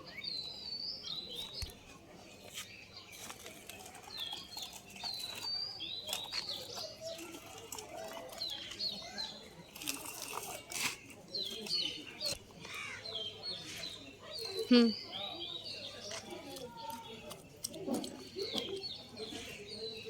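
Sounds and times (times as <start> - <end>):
small birds chirping: 0.0 - 20.0.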